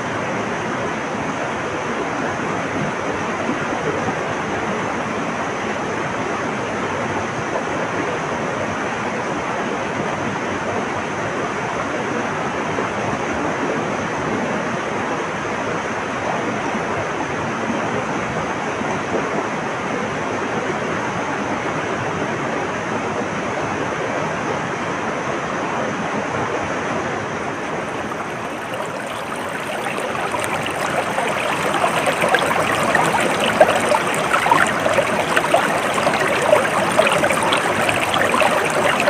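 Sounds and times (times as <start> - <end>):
water rushing: 27.4 - 39.0.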